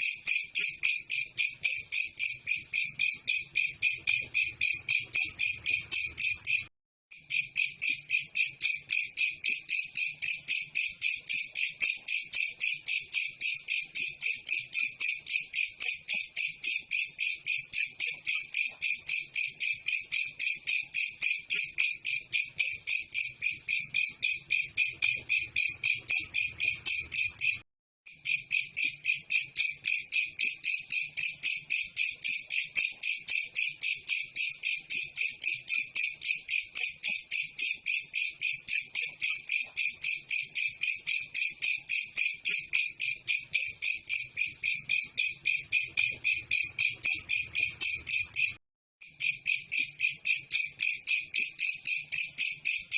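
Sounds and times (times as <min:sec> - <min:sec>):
katydid buzzing chirps: 0:23.4 - 0:27.6, 0:44.7 - 0:48.6.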